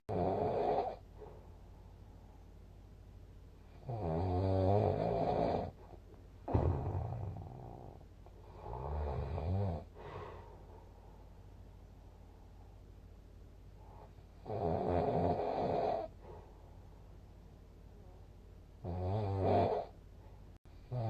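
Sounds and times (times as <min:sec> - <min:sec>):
person snoring: 0:00.1 - 0:01.0, 0:03.7 - 0:05.8, 0:06.5 - 0:10.3, 0:14.4 - 0:16.2, 0:18.8 - 0:19.9.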